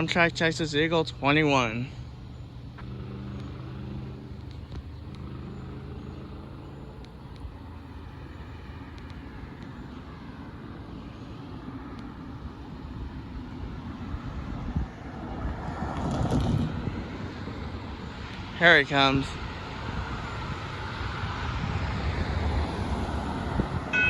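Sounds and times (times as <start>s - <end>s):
broad engine rumble: 0.0s - 24.0s
vehicle engine hum: 0.0s - 24.0s.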